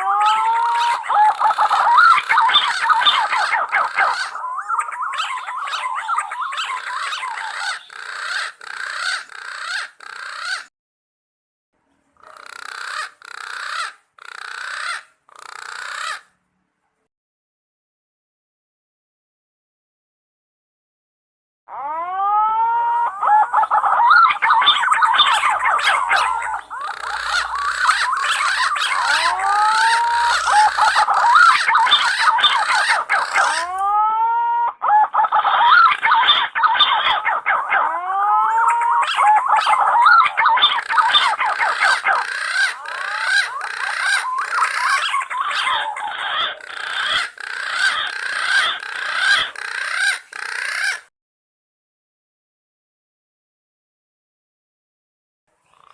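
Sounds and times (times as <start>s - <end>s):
green pigeons calling: 0.0s - 10.7s, 12.2s - 16.3s, 21.7s - 51.1s.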